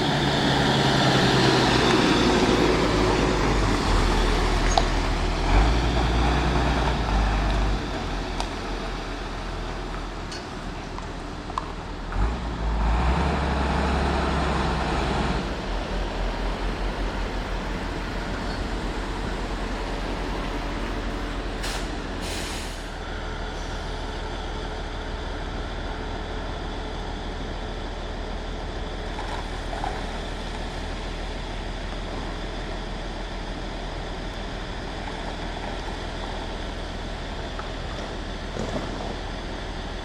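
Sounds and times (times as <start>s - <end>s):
truck diesel engine rumbling: 0.0s - 40.0s
air brake hisses: 21.6s - 23.9s.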